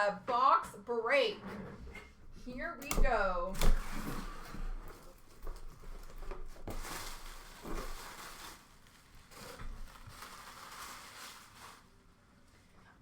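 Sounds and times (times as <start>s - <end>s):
packaging rustling and tearing: 3.5s - 12.2s.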